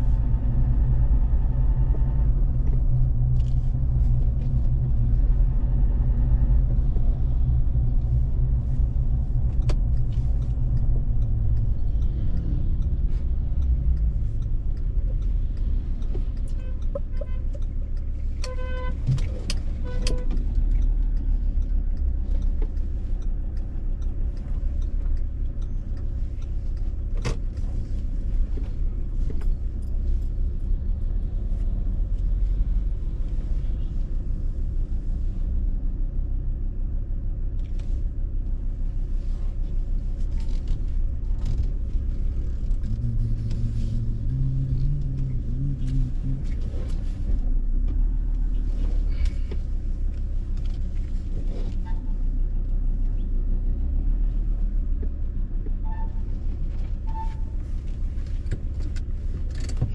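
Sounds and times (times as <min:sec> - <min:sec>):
vehicle engine and tyres rumbling: 0:00.0 - 0:59.9
low droning engine note: 0:40.3 - 0:51.1.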